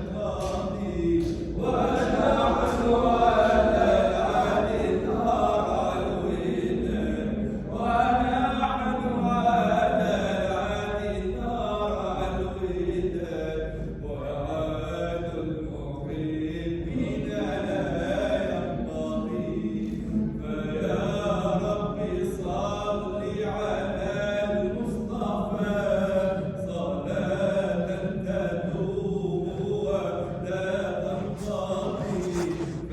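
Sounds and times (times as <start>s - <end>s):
group of voices chanting: 0.0s - 7.4s, 31.0s - 32.9s.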